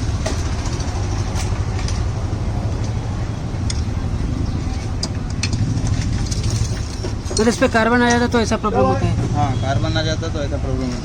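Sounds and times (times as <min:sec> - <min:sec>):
engine running with low rumble: 0:00.0 - 0:08.3.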